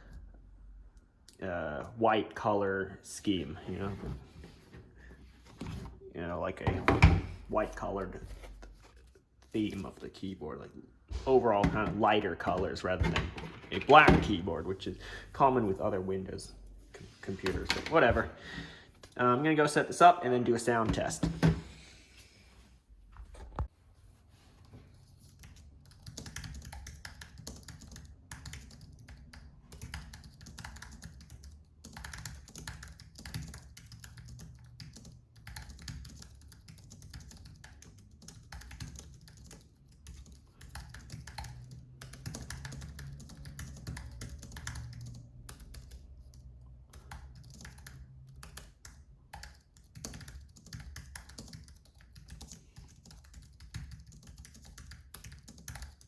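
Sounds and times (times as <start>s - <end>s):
keyboard keys clicking: 25.5s - 46.0s, 46.9s - 56.0s.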